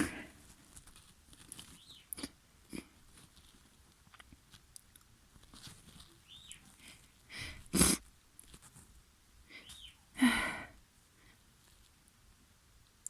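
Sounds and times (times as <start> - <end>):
person sniffling: 0.0 - 0.4, 9.5 - 10.8
high squeaky breaths: 9.5 - 10.8.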